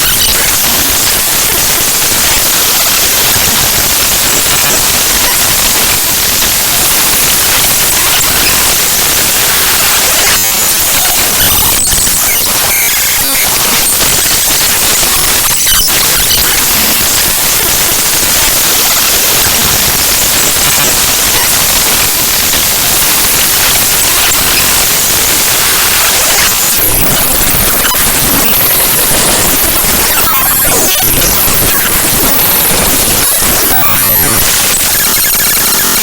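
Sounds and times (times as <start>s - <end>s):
loud dense static hiss: 0.0s - 36.0s.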